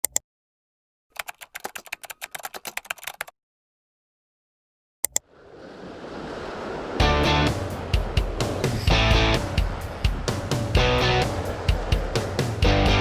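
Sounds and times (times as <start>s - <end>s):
sharp clicks: 1.2s - 3.3s
rising swell of noise: 5.3s - 13.0s.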